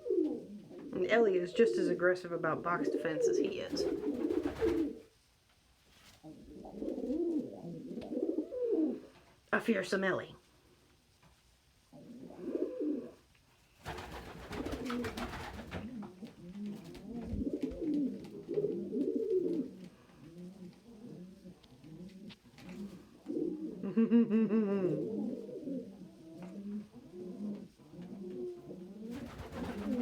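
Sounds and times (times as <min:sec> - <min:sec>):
pigeons cooing: 0:00.0 - 0:02.0, 0:02.7 - 0:05.0, 0:06.2 - 0:09.1, 0:11.9 - 0:13.2, 0:13.9 - 0:30.0
rustling: 0:03.7 - 0:08.3, 0:13.3 - 0:23.7.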